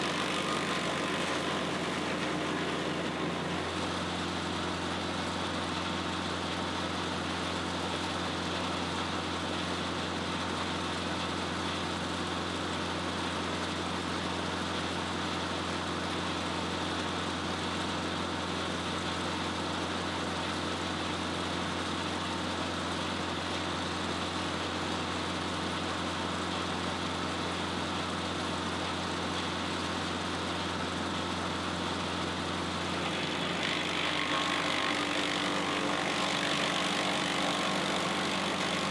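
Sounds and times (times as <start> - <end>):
wood chipper diesel engine: 0.0 - 7.8, 23.8 - 38.9.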